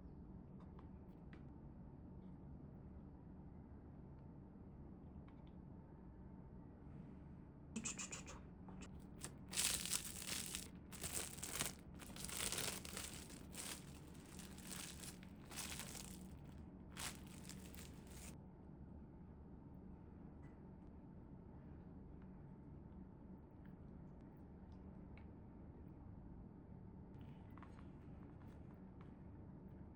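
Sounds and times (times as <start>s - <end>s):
food wrapping crinkling and tearing: 9.0s - 18.4s.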